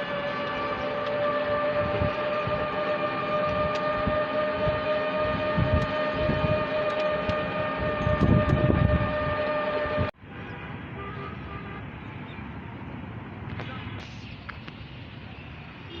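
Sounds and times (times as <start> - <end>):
train electric whine: 0.0 - 10.1
train rumble: 0.0 - 10.2.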